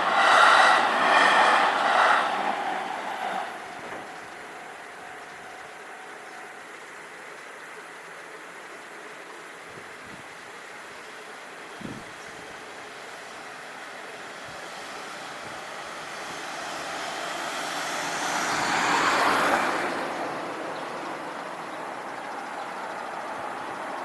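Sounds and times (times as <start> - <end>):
vehicle passing by: 0.0 - 4.6, 13.8 - 21.4.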